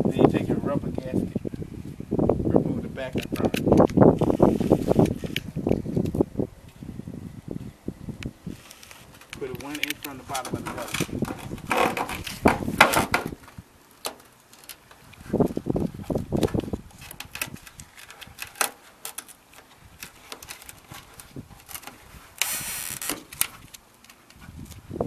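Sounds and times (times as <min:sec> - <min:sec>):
rustling scrape: 0:04.2 - 0:05.5, 0:08.5 - 0:13.6, 0:14.5 - 0:24.9
dull knocks: 0:11.2 - 0:13.4.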